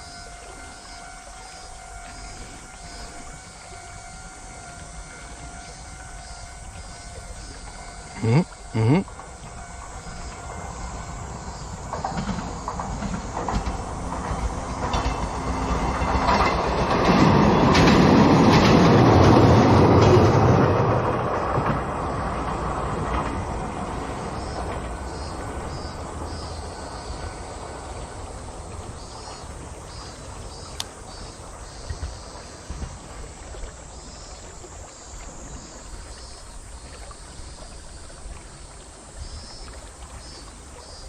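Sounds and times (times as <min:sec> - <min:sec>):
train wheels clattering over rails: 0:09.2 - 0:33.4.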